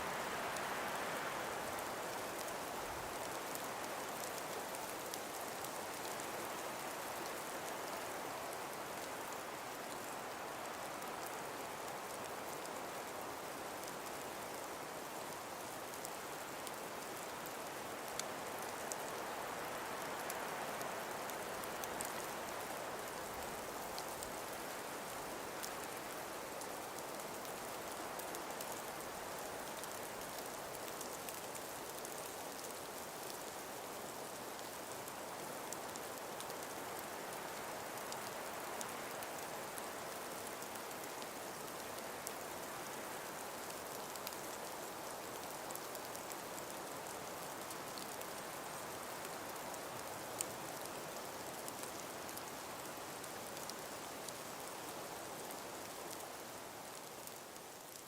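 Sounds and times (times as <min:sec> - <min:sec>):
breeze through trees: 0:00.0 - 0:58.0
faint ticks: 0:23.4 - 0:56.3, 0:56.9 - 0:58.0.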